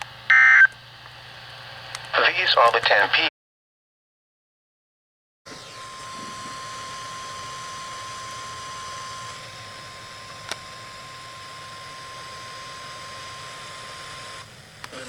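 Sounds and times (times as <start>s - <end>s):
radio static: 2.0s - 3.3s.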